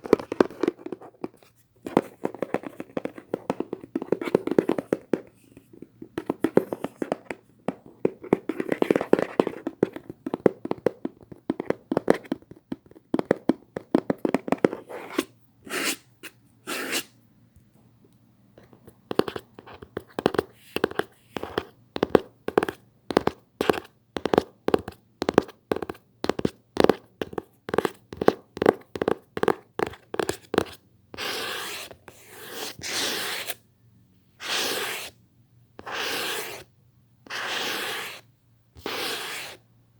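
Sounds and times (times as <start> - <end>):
tapping on a hard surface: 0.1 - 14.8
scratching or rubbing strokes: 34.4 - 35.2, 35.8 - 36.6, 37.3 - 38.2, 38.8 - 39.6.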